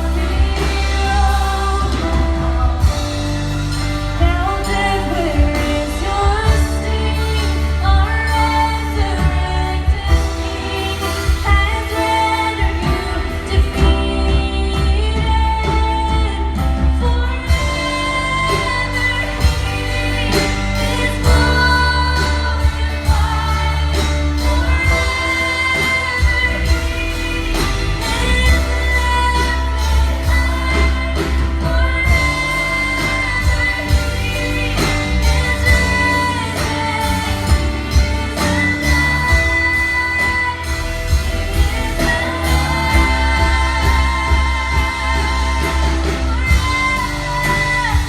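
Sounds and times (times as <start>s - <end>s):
band playing worship music: 0.0s - 48.0s
woman singing: 0.0s - 48.0s.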